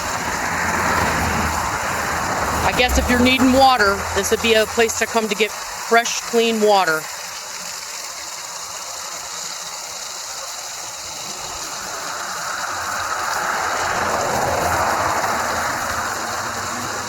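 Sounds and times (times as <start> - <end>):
vehicle passing on highway: 0.0 - 5.9, 12.5 - 17.0
waterfall rushing: 0.0 - 17.0.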